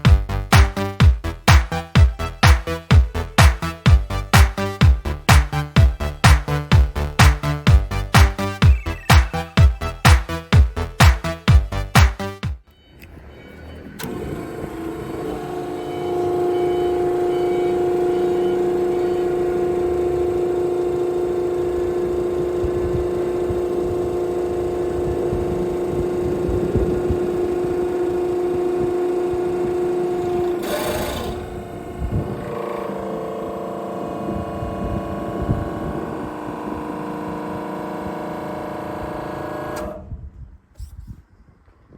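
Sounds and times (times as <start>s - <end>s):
hydraulic pump whining: 13.8s - 40.1s.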